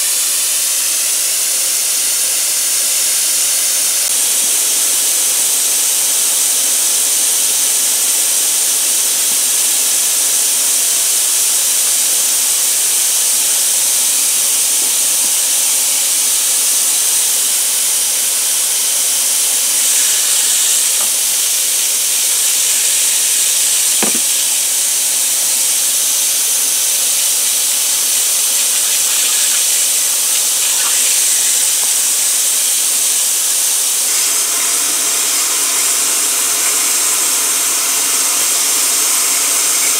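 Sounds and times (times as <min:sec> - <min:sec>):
rushing air hiss: 0:14.9 - 0:39.9.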